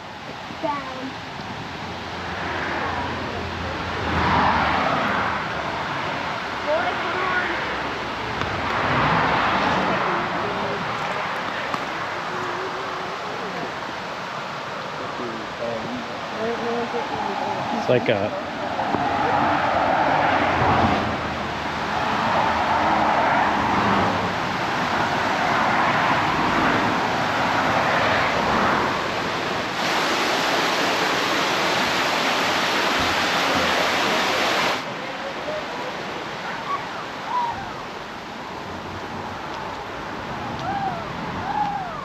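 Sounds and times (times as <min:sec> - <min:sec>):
water rushing past boat: 0:00.0 - 0:42.0
faint voices: 0:09.6 - 0:20.2, 0:33.3 - 0:38.4
wind rushing: 0:18.4 - 0:34.9.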